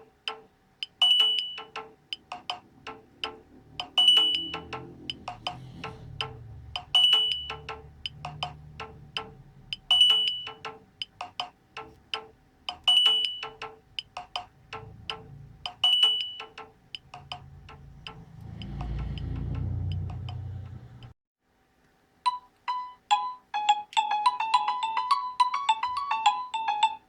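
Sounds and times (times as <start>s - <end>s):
phone ringtone: 1.0s - 5.2s, 6.9s - 8.5s, 9.8s - 12.0s, 12.9s - 13.7s, 15.8s - 16.6s, 22.3s - 27.0s
low rumble: 2.0s - 11.2s, 11.8s - 21.2s.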